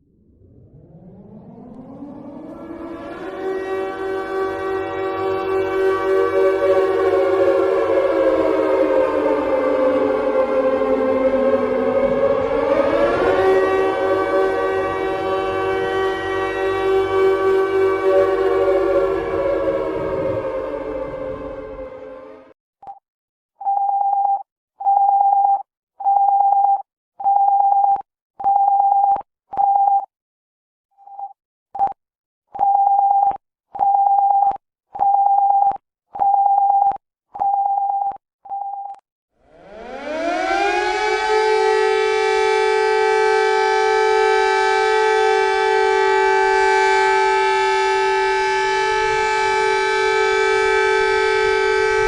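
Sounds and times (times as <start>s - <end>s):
civil defense siren: 0.0s - 22.6s, 39.3s - 52.0s.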